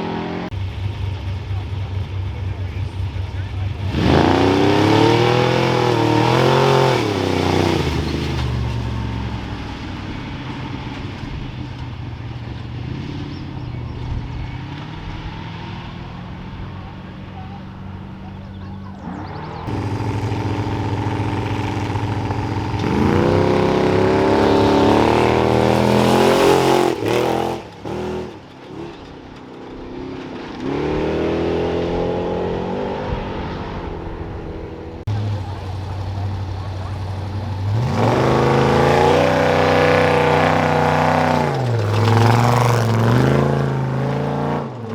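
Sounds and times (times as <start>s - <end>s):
off-road vehicles revving and accelerating: 0.0s - 44.9s.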